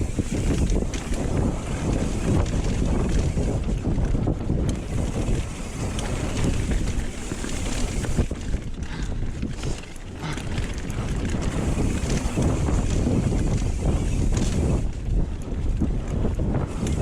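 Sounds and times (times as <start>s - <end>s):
bike clicks and knocks: 0.0s - 17.0s
tyres rumbling on dirt trail: 0.0s - 17.0s
wind buffeting microphone: 0.0s - 17.0s.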